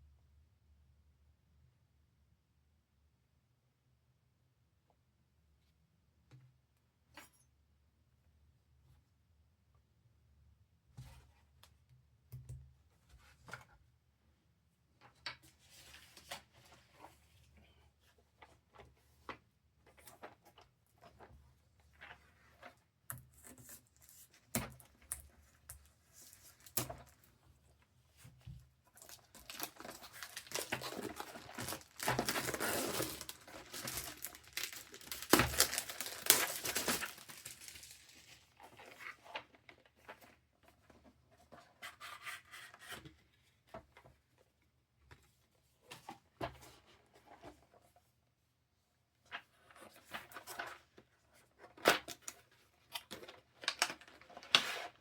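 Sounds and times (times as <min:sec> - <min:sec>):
plastic packaging rustling and tearing: 0:29.0 - 0:39.0.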